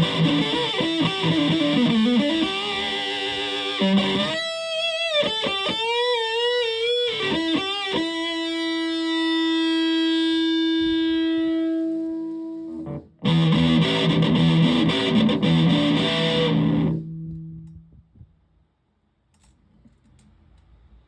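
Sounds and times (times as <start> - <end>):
distorted guitar note ringing: 0.0 - 4.6, 5.2 - 17.9
fuzzed electric guitar riff: 0.0 - 17.8.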